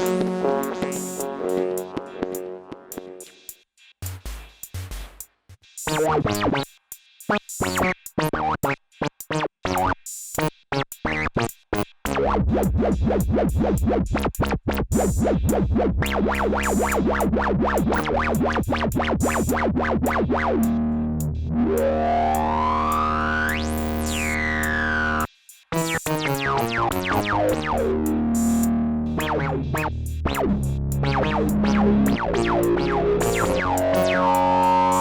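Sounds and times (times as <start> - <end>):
synth pitch sweep: 0.0 - 3.2, 20.0 - 25.3, 26.9 - 35.0
synthesizer notes: 0.0 - 3.3, 19.2 - 35.0
hi-hat ticks: 0.0 - 9.4, 10.0 - 11.7, 12.6 - 21.3, 23.5 - 26.4, 27.5 - 35.0
held low bass: 12.2 - 25.3, 26.6 - 35.0.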